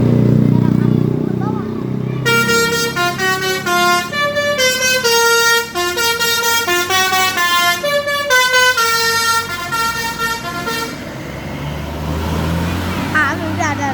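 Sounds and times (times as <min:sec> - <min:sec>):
bus multi-tone air horn tune: 0:02.2 - 0:11.1.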